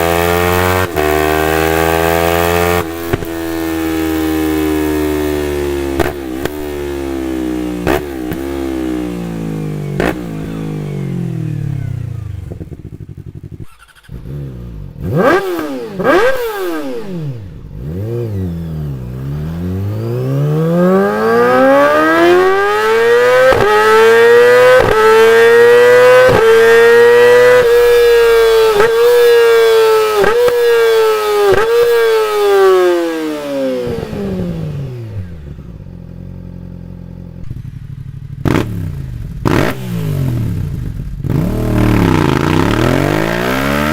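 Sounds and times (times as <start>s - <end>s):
motorcycle engine revving through gears: 0.0s - 43.9s.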